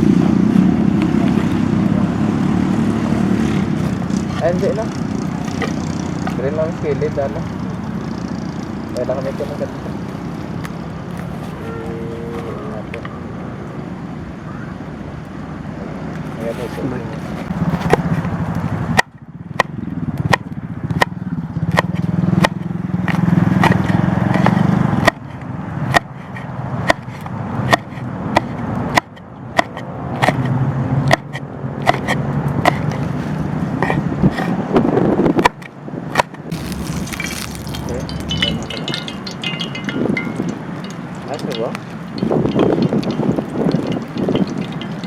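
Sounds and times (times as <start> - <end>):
knife chopping on cutting board: 21.7 - 30.5, 31.1 - 33.1.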